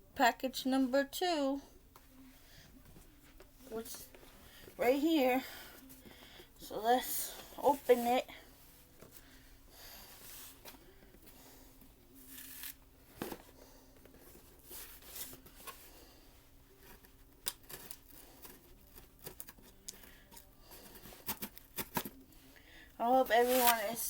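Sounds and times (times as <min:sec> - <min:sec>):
packaging rustling and scraping: 0:12.2 - 0:16.0, 0:16.7 - 0:22.3, 0:23.2 - 0:24.0.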